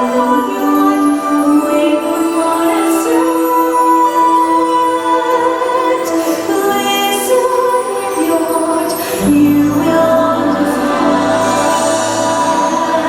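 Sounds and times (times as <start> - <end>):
choir singing: 0.0 - 13.0
orchestral show music: 0.0 - 13.0
women singing: 0.0 - 13.0
bass line: 9.2 - 13.0.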